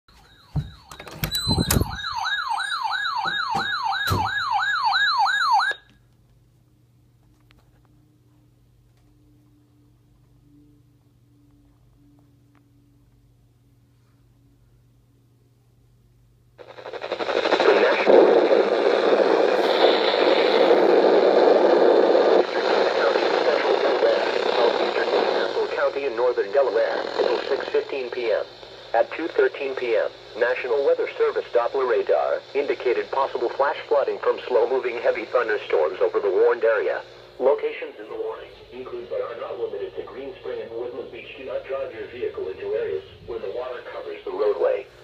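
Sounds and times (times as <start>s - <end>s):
electronic siren sweeps: 0.1s - 5.9s
faint hum: 5.8s - 45.0s
crackling radio static: 16.6s - 45.0s.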